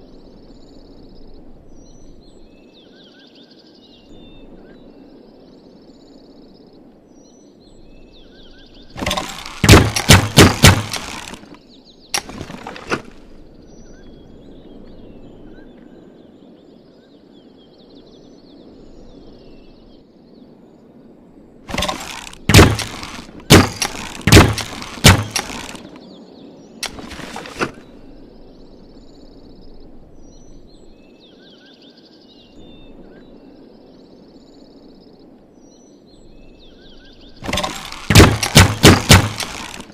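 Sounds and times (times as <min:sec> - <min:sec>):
birds chirping faintly: 0:00.0 - 0:39.9
outdoor background noise: 0:00.0 - 0:39.9
crossbow wooden clacks: 0:09.0 - 0:11.6, 0:12.2 - 0:13.2, 0:21.7 - 0:26.0, 0:26.8 - 0:27.8, 0:37.4 - 0:39.9.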